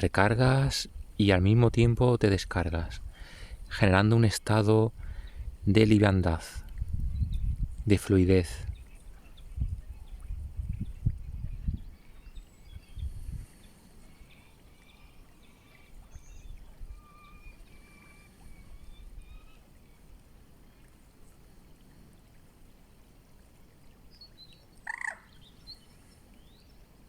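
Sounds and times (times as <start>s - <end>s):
faint flowing river: 0.0s - 27.0s
high bird calls: 8.7s - 20.9s, 24.1s - 26.6s.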